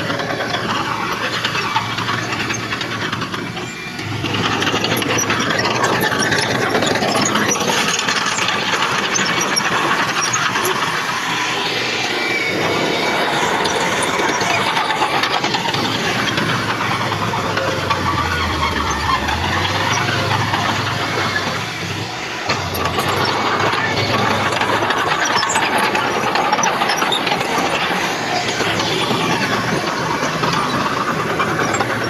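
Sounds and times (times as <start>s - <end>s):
diesel machinery engine: 0.0s - 32.0s
mechanical clattering: 12.3s - 32.0s.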